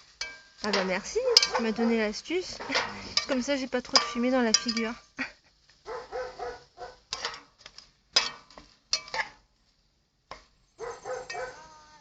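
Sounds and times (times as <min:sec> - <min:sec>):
metal utensil scraping cooking pot: 0:00.0 - 0:05.0, 0:07.0 - 0:09.4.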